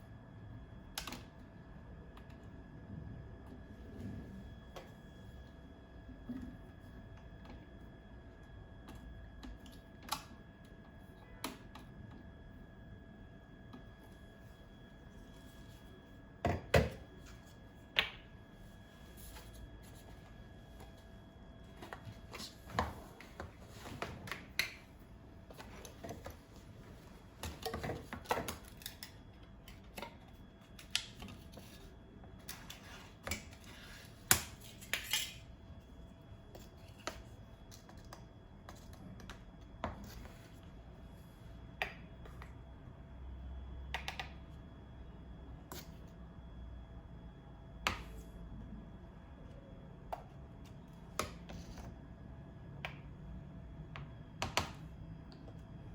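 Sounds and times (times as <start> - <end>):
faint steady hum: 0.0 - 55.9.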